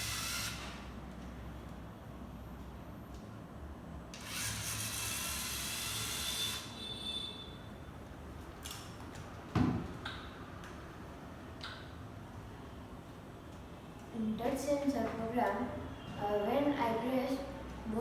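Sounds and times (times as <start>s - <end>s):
toy car motors whirring: 4.2s - 6.7s.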